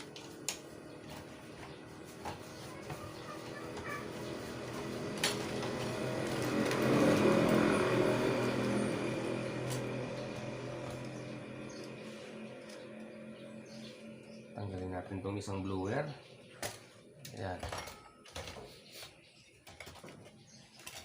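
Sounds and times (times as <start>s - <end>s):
vehicle passing by: 1.1s - 15.7s.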